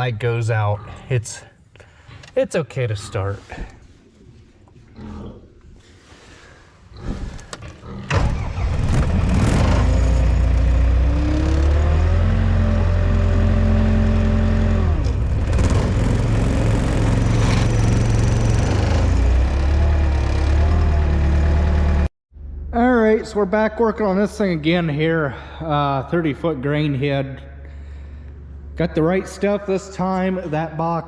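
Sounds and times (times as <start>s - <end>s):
diesel engine starting and running: 8.1s - 24.5s.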